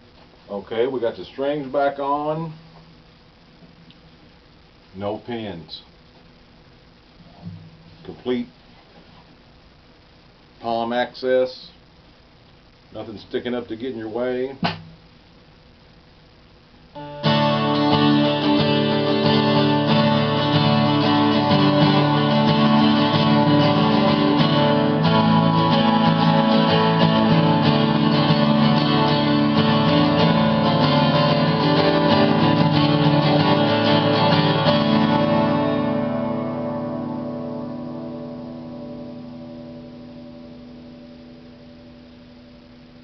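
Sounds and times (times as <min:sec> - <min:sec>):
twelve-string acoustic guitar chords: 0:17.0 - 0:43.0.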